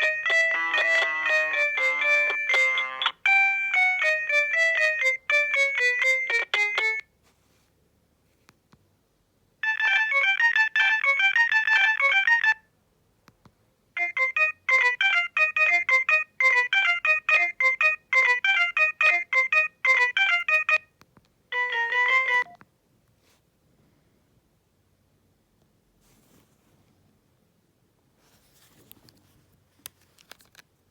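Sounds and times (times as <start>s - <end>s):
mobile phone ringtone melody: 0.0s - 7.1s, 9.6s - 12.6s, 14.0s - 20.9s, 21.5s - 22.6s.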